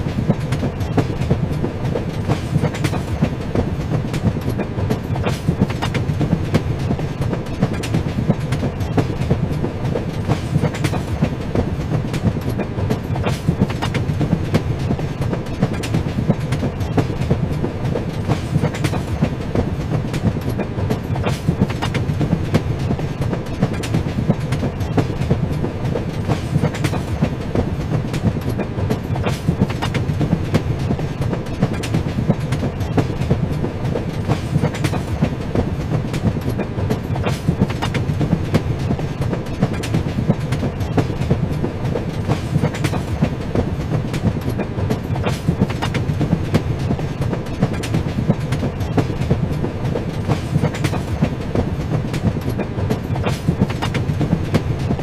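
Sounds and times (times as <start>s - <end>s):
train rumbling: 0.0s - 55.0s
wheels clacking over rail joints: 0.0s - 55.0s.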